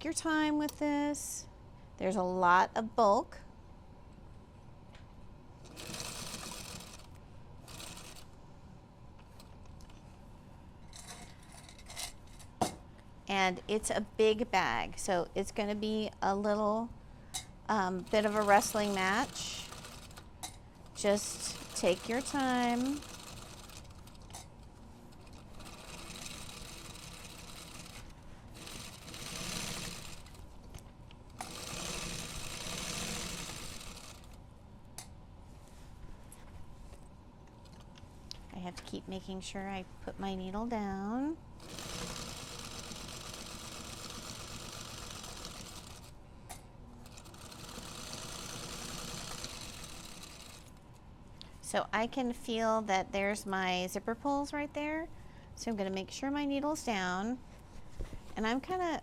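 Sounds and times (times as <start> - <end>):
sewing machine stitching: 5.7 - 7.1, 7.7 - 8.3, 18.0 - 20.3, 20.9 - 24.3, 25.2 - 30.4, 31.4 - 34.4, 41.6 - 46.1, 47.0 - 50.7.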